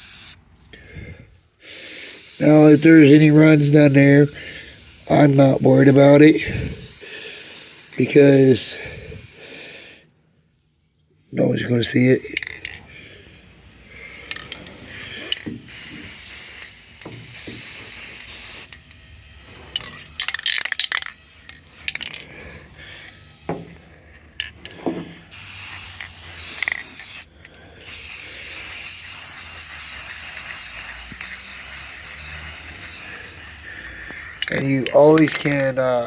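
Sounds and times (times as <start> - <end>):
spray paint can hissing: 0.0 - 0.4, 1.7 - 10.0, 14.3 - 18.8, 25.3 - 35.8
sharp clicks and rattles: 19.7 - 22.3, 34.4 - 35.8.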